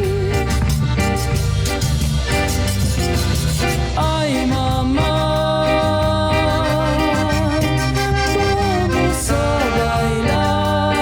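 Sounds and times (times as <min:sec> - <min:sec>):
woman singing: 0:00.0 - 0:00.6, 0:04.0 - 0:11.0
cumbia band playing: 0:00.0 - 0:11.0.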